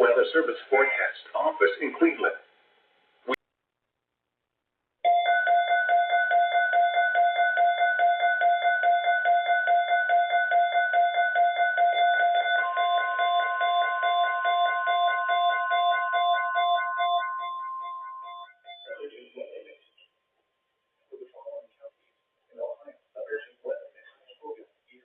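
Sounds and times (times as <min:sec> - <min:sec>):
rapid electronic alarm beeps: 0:05.1 - 0:19.2
steady continuous tone: 0:05.1 - 0:25.0.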